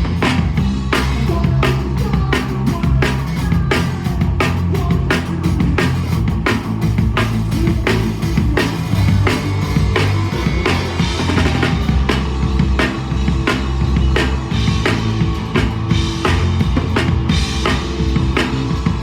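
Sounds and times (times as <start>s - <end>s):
live rock band playing: 0.0s - 19.0s
drum kit hitting: 5.9s - 19.0s.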